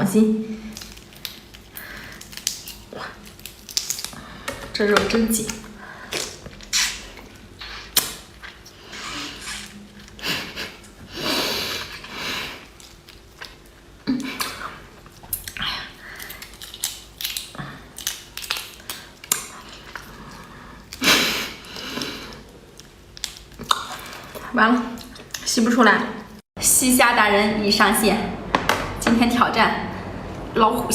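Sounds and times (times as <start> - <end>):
prawn shell crackling: 0.7 - 4.8, 15.2 - 21.0.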